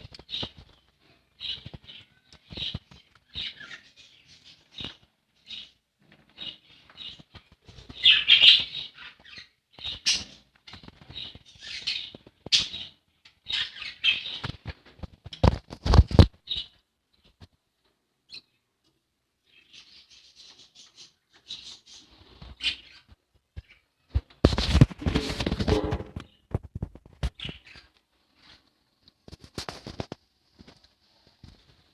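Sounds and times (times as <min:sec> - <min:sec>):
budgerigars chirping and chattering: 0:00.1 - 0:14.6, 0:19.5 - 0:23.8.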